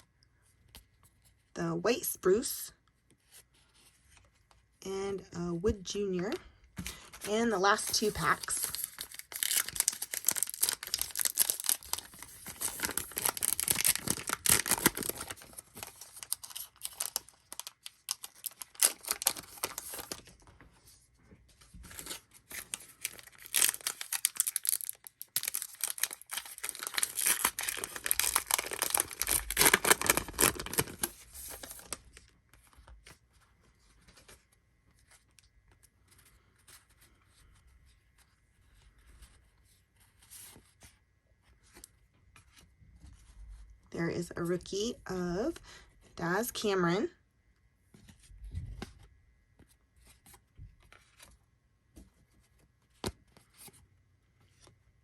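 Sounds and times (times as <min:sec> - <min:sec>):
faint handling of cards: 0:00.0 - 0:01.5, 0:02.8 - 0:04.8, 0:05.6 - 0:43.9, 0:47.8 - 0:55.0
card wrappers tearing and crinkling: 0:06.8 - 0:20.4, 0:21.9 - 0:32.2.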